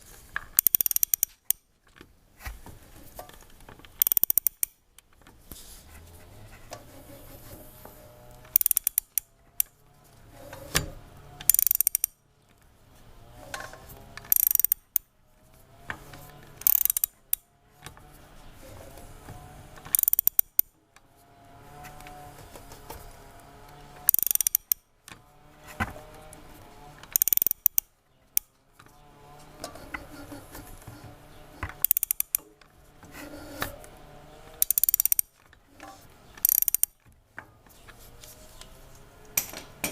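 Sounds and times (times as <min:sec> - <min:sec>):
ratchet wrench clicking: 0:00.6 - 0:01.6, 0:04.0 - 0:04.8, 0:08.4 - 0:09.7, 0:11.4 - 0:12.2, 0:14.3 - 0:15.1, 0:16.6 - 0:17.4, 0:19.9 - 0:20.7, 0:24.0 - 0:24.8, 0:27.1 - 0:28.5, 0:31.8 - 0:32.5, 0:34.6 - 0:35.4, 0:36.4 - 0:37.0.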